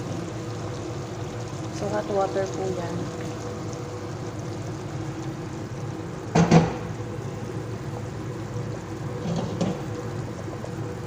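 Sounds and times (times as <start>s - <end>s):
pot of water hissing on stove: 0.0s - 11.0s
knock against pot: 6.3s - 6.8s.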